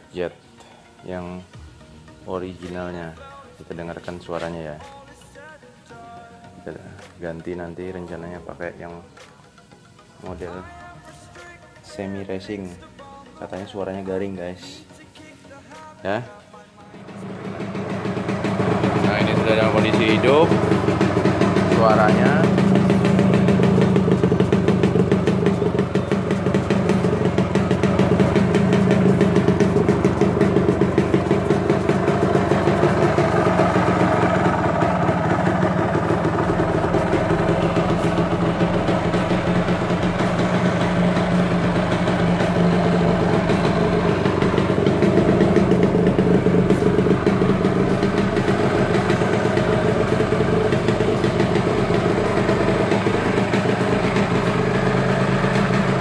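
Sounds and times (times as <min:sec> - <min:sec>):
two-stroke engine idling: 0:16.9 - 0:56.0.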